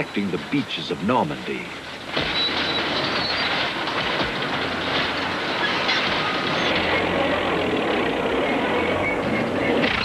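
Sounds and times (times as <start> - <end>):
tank tracks clattering: 1.6 - 8.2
metal on metal squeals: 2.2 - 3.8.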